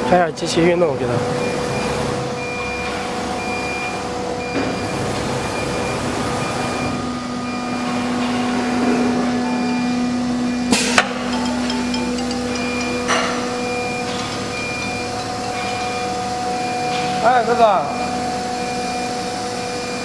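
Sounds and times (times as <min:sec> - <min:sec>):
router hum and whine: 0:00.0 - 0:20.0
short high beeps: 0:09.4 - 0:15.0.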